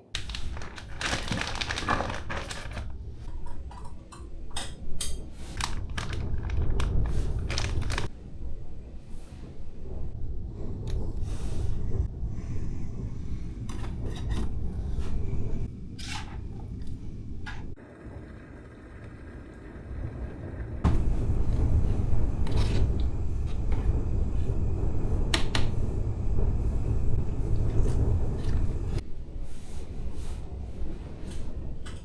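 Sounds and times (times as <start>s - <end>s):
cooking pots and utensils clinking: 3.2s - 5.4s
gale-force wind rumble: 5.2s - 32.0s.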